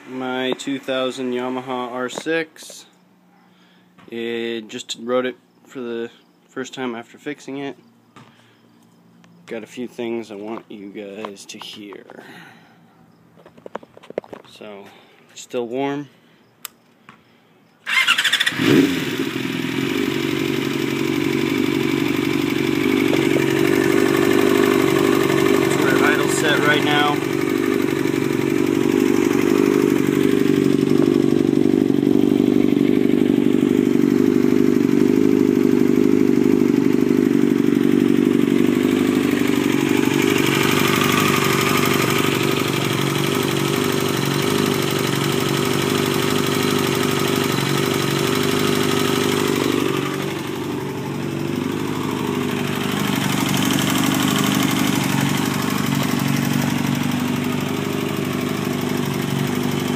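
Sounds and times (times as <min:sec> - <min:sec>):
weird engine noise: 0:00.0 - 0:15.6, 0:16.6 - 0:59.9
motorcycle engine idling: 0:17.8 - 0:59.9.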